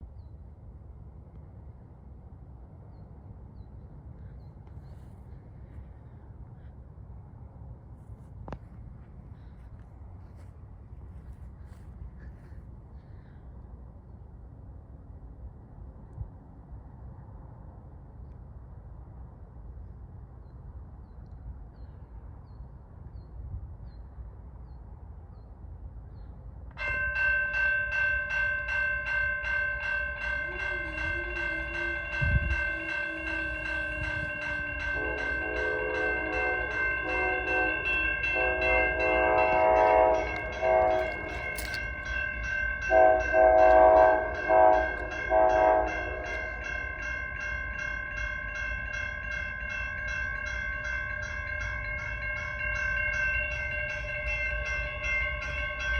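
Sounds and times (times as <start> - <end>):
crossing bell clanging: 26.8 - 55.9
locomotive horn blasts: 30.2 - 41.9, 42.9 - 46.6.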